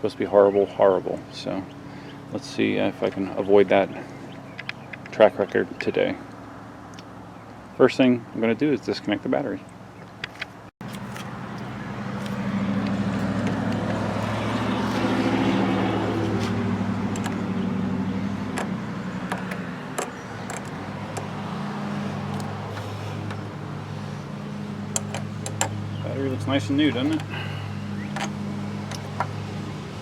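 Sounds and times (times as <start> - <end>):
vehicle engine humming: 0.7 - 7.8, 9.7 - 30.0.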